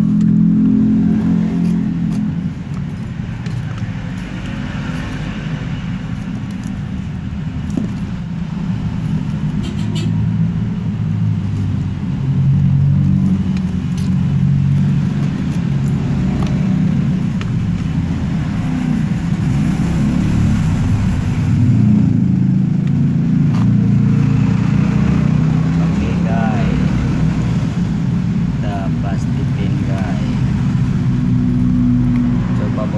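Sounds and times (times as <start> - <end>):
steady low rumble: 10.3 - 32.9.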